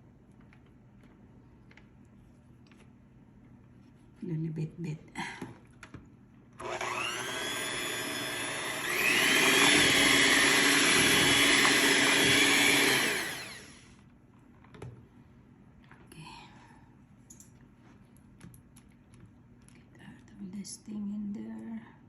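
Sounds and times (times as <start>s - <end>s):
electric mixer running: 6.6s - 14.0s.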